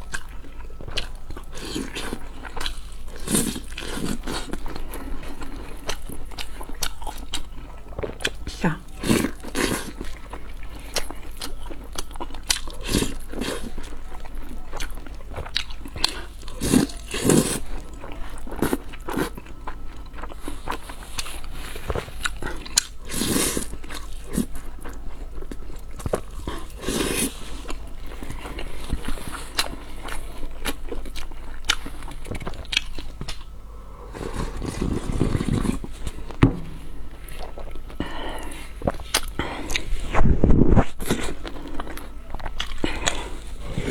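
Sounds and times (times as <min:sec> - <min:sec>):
person chewing food: 0:00.0 - 0:43.9
mouth clicks and crunchy bites: 0:34.3 - 0:43.9.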